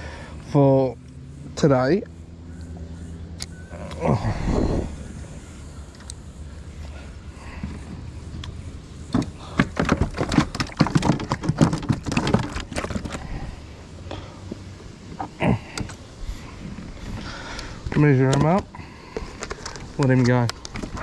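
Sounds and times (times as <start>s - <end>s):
handling clicks and rattles: 7.6s - 13.4s, 17.5s - 21.0s.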